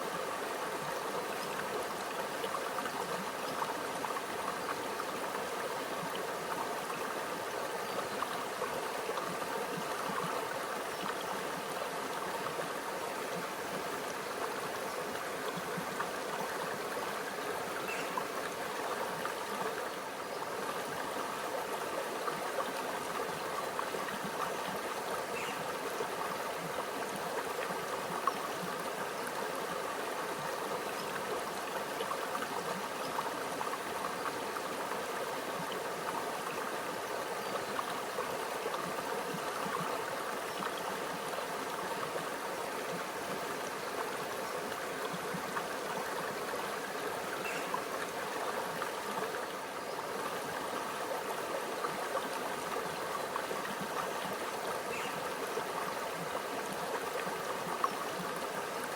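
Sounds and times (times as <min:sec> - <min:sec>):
stream babbling over rocks: 0:00.0 - 0:58.9.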